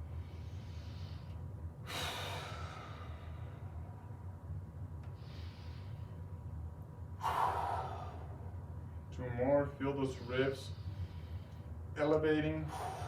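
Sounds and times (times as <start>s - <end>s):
man breathing heavily: 0.0s - 4.1s, 5.0s - 6.5s, 7.1s - 9.1s, 10.0s - 11.9s, 12.5s - 13.0s
steady low hum: 0.0s - 13.0s.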